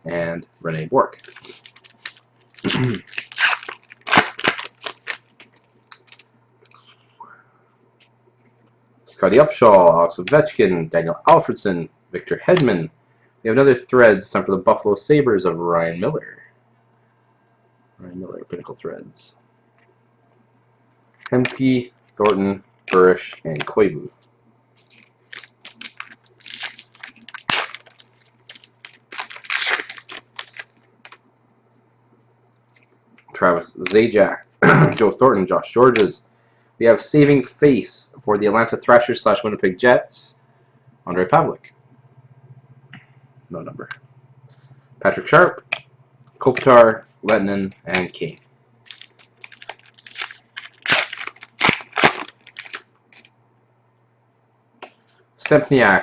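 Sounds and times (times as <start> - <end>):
foil pack crinkling and rustling: 1.1 - 6.3, 21.2 - 23.8, 24.8 - 31.2, 48.0 - 53.3.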